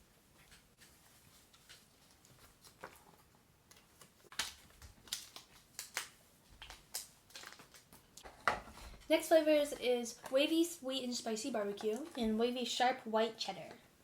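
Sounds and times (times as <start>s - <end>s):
small clicks and rustles: 0.3s - 9.1s.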